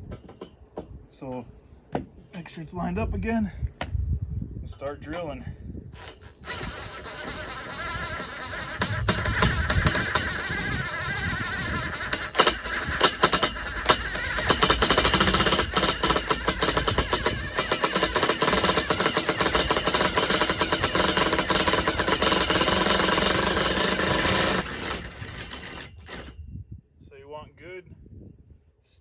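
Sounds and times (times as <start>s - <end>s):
power drill grinding through metal pipe: 6.0s - 26.4s.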